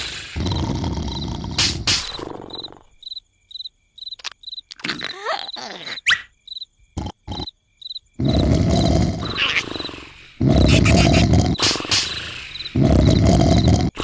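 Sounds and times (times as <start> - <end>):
snore: 0.0 - 2.9, 8.2 - 14.0
crickets chirping: 0.0 - 14.0
short squeaky vocal sounds: 4.2 - 6.3, 9.2 - 9.8, 10.6 - 11.3.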